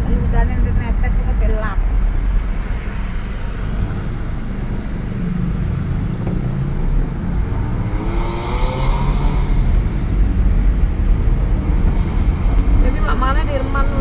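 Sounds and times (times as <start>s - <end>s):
vehicle rumble on road: 0.0s - 14.0s
vehicle passing close by: 5.2s - 14.0s.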